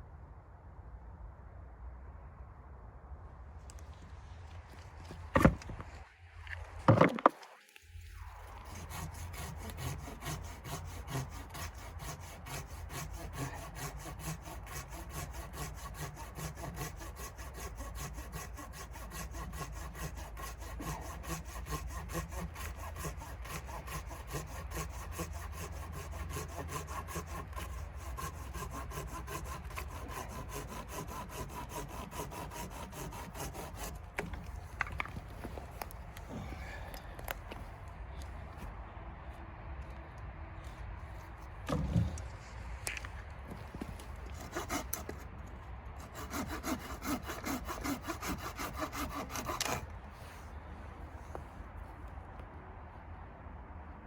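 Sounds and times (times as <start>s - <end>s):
hand saw cutting wood: 5.4s - 5.6s, 8.3s - 35.0s, 43.8s - 45.3s, 46.0s - 50.4s.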